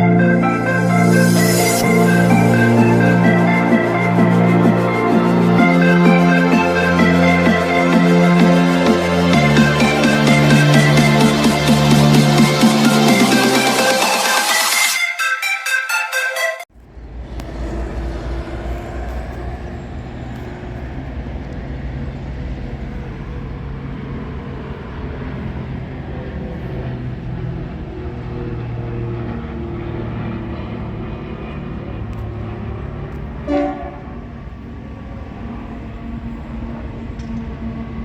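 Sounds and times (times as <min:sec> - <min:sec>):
locomotive engine drone: 0:00.0 - 0:15.0, 0:16.7 - 0:38.0
locomotive horn toot: 0:33.4 - 0:34.4.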